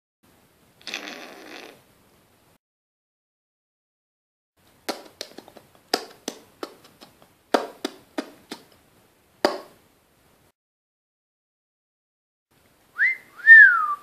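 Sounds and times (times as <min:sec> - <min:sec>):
mouth clicks: 0:00.8 - 0:01.8.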